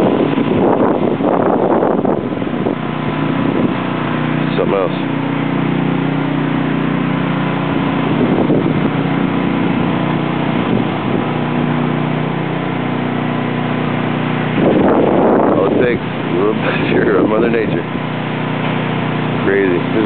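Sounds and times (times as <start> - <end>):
small engine droning: 0.0 - 20.0.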